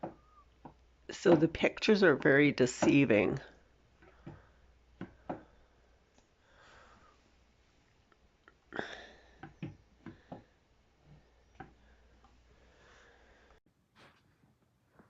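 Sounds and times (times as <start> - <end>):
soft sniff: 12.6 - 14.4.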